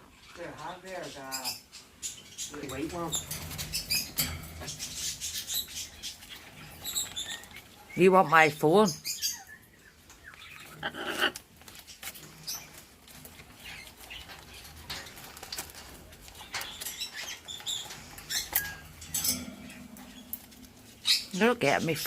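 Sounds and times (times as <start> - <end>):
clicks taps and rustles: 11.4 - 22.0.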